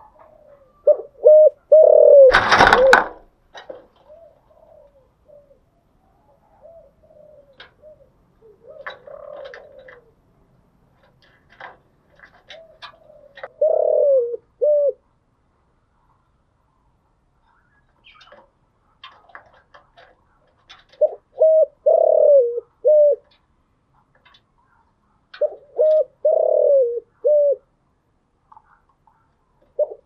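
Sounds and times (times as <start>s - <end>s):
dove cooing: 0.0s - 3.2s, 3.8s - 10.3s, 11.0s - 15.1s, 19.0s - 23.4s, 24.3s - 27.7s, 28.7s - 30.0s.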